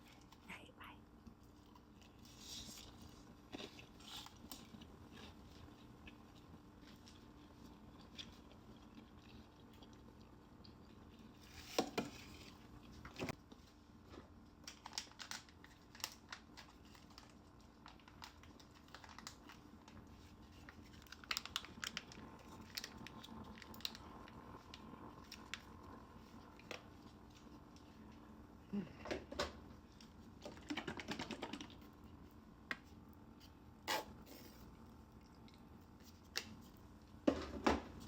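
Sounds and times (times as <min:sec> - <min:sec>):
crispy chicken being chewed: 0:01.2 - 0:11.4, 0:14.6 - 0:28.3, 0:34.7 - 0:37.1.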